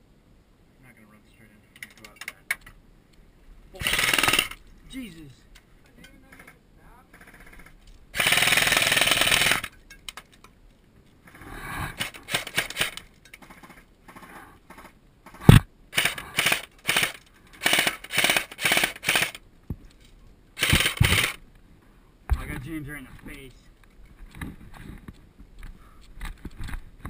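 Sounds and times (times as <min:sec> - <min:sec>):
airsoft gun firing bursts: 0:03.8 - 0:04.6, 0:06.3 - 0:09.7, 0:12.0 - 0:13.8, 0:14.7 - 0:19.4, 0:20.6 - 0:21.4
heavy thump: 0:22.3 - 0:22.6.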